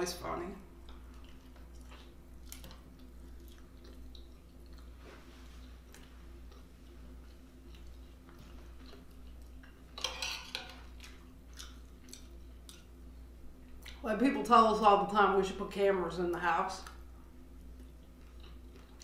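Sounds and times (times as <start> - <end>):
chewing and mouth clicks: 0.8 - 14.0, 17.6 - 19.0.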